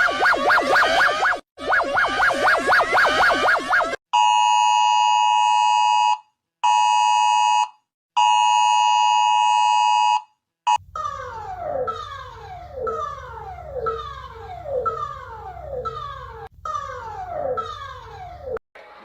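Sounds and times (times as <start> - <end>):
downward-sliding siren tone: 0.0 - 4.0
falling siren-like wail: 0.0 - 4.0, 11.1 - 16.5.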